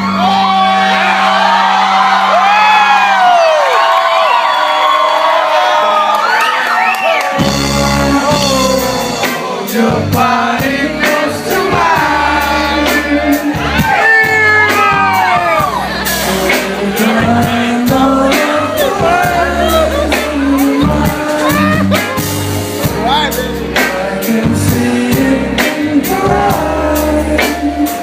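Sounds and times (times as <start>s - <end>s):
audience cheering and whooping: 0.0s - 7.7s, 12.7s - 23.2s
live band playing: 6.7s - 28.0s.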